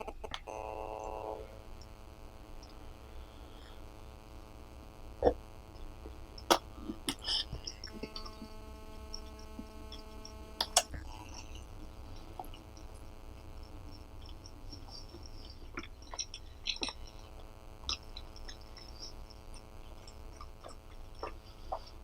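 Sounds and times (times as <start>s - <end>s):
steady electrical hum: 0.0s - 22.0s
eating sounds: 5.2s - 22.0s.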